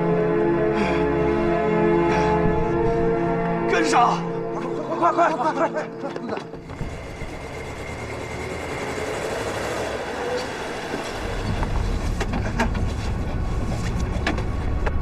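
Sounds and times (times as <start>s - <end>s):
car engine running: 6.6s - 15.0s.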